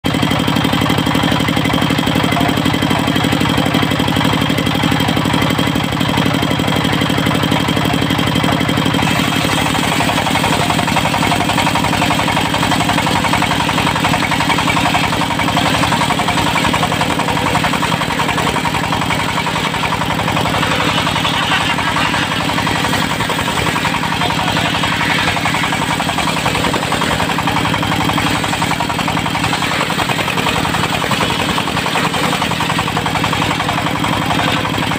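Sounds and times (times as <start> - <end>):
sawmill diesel engine running: 0.0 - 34.9.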